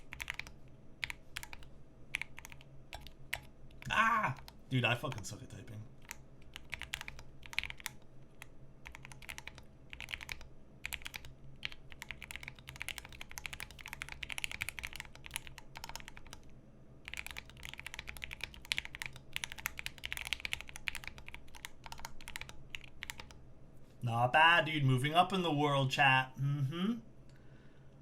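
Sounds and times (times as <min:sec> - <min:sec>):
mechanical keyboard typing: 0:00.0 - 0:05.4, 0:06.0 - 0:16.5, 0:17.1 - 0:23.4.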